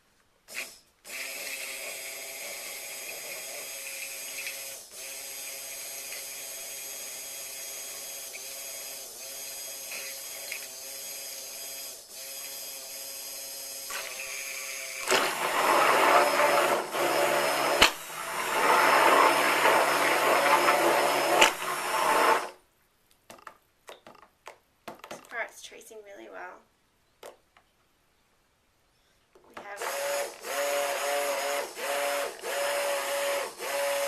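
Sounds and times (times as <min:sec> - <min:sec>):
stick blender motor humming: 0:00.5 - 0:22.6, 0:29.6 - 0:34.0.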